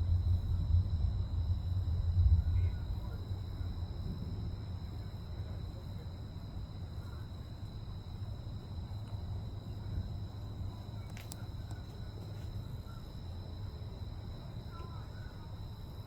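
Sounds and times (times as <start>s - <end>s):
low rumble: 0.0s - 4.8s
high insect drone: 0.0s - 16.0s.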